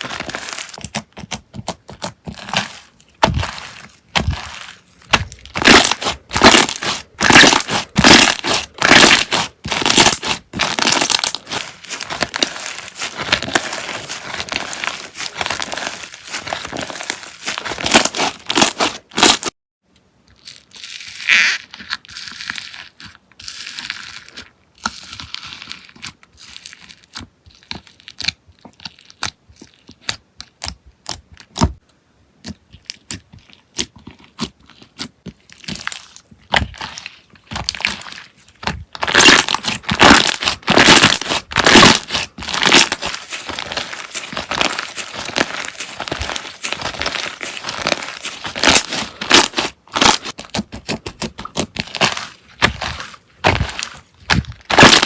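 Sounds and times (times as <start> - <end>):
slime crunching and crackling: 0.0 - 19.6, 20.3 - 31.8, 32.4 - 55.0.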